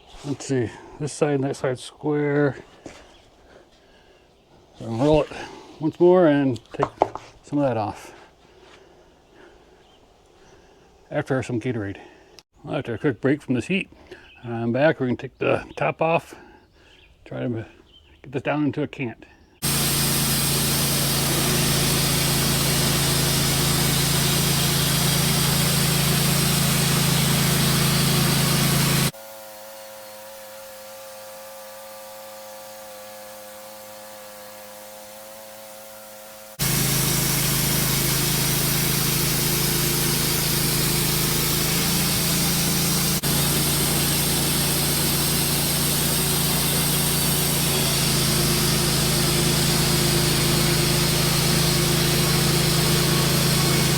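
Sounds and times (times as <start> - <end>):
chainsaw cutting log: 6.8 - 7.3, 19.6 - 53.9.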